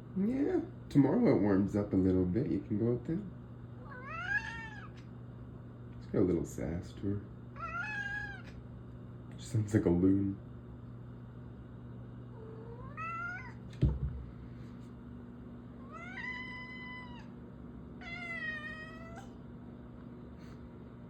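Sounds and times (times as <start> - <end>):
cat meowing: 3.8 - 5.0, 7.6 - 8.6, 12.4 - 13.6, 15.8 - 17.3, 18.0 - 19.4.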